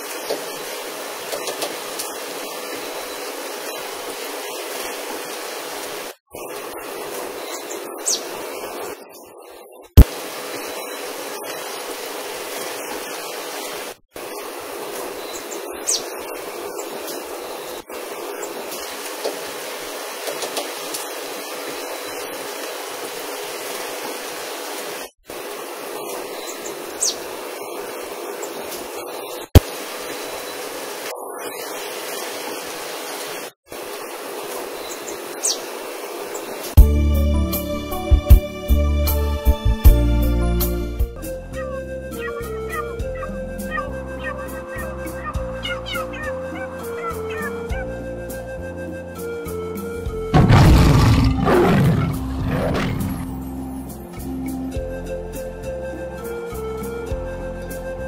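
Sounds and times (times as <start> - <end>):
heavy rain hiss: 0.0 - 9.0, 10.0 - 39.6, 50.4 - 54.0
high chirps: 41.5 - 47.8.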